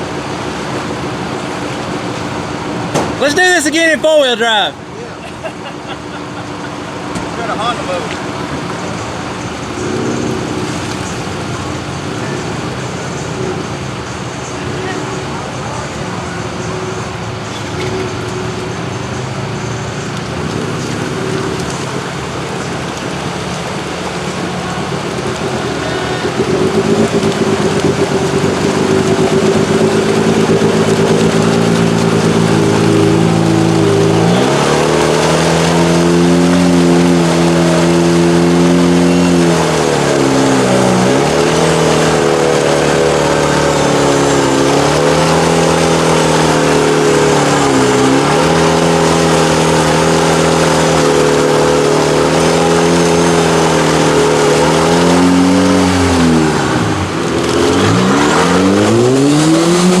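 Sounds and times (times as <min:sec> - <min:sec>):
engine revving hard under load: 0:24.8 - 1:00.0.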